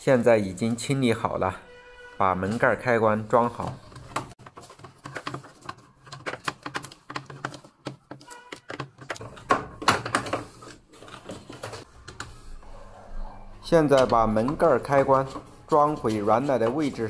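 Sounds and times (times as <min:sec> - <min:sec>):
plastic parts clicking and snapping: 0:03.6 - 0:12.3.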